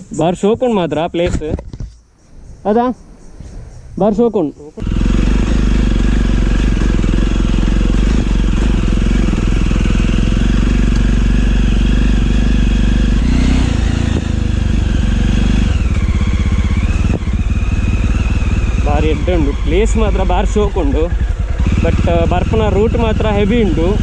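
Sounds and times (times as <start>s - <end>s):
motorcycle engine running: 4.8s - 24.0s.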